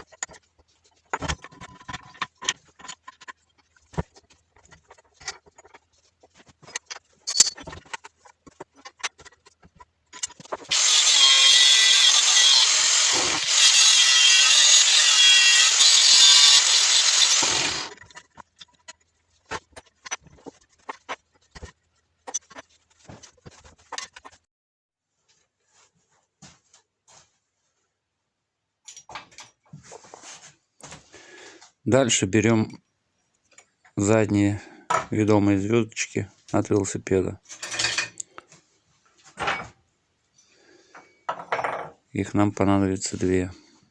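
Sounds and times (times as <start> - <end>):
power tool running: 10.7 - 18.0.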